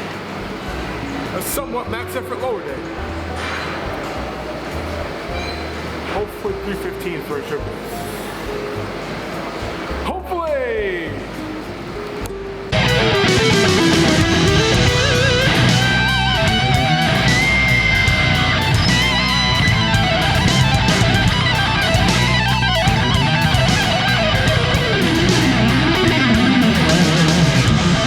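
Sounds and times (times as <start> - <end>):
rock music with distorted guitar: 12.7 - 28.0.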